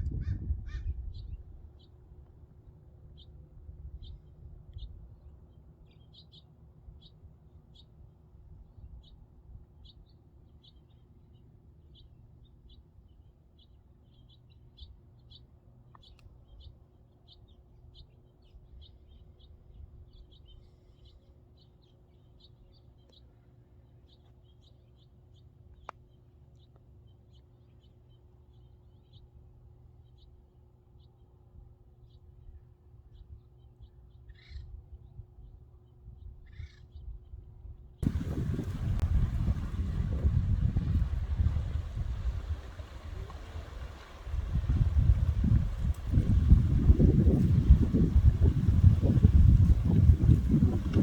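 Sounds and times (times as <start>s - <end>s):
small birds chirping: 0.1s - 8.0s, 9.8s - 37.2s, 38.0s - 51.0s
faint low rumble: 34.3s - 51.0s.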